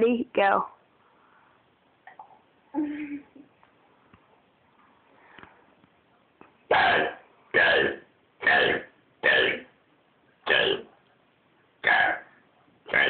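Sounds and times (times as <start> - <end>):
girl burping letters: 6.7 - 9.7, 10.5 - 10.9.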